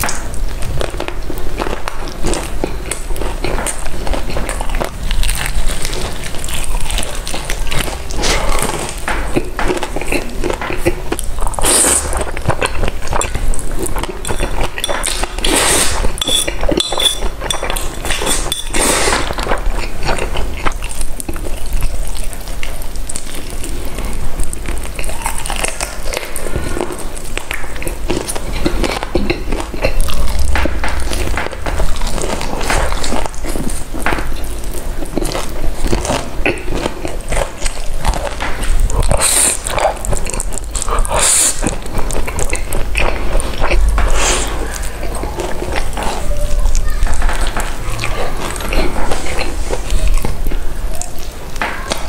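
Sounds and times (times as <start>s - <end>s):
chewing with wet crackles: 0.0s - 52.0s
utensils clinking against dish: 11.8s - 21.0s.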